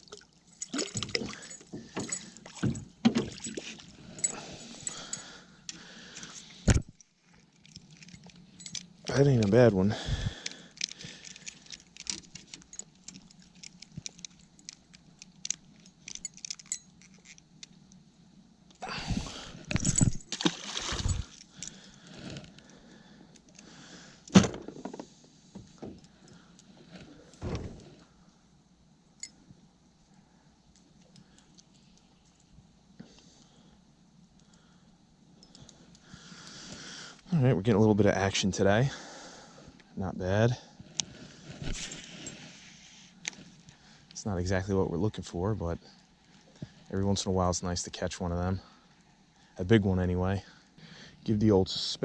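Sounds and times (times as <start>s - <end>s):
rustling and scraping: 40.8s - 43.8s.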